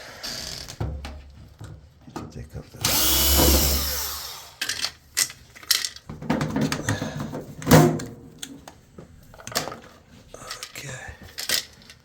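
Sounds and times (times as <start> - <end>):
power driver whirring: 2.8 - 4.8
metallic clatter of screws: 4.6 - 6.1.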